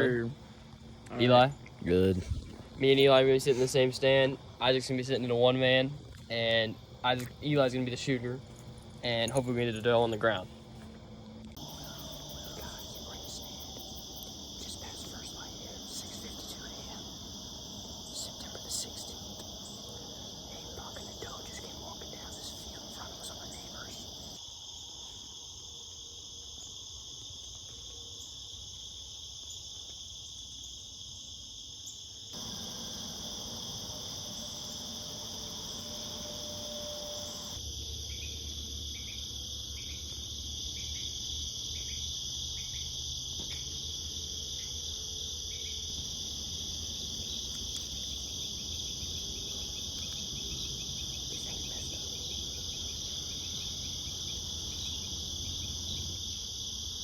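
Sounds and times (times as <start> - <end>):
crickets and insects chirring: 0.0 - 57.0.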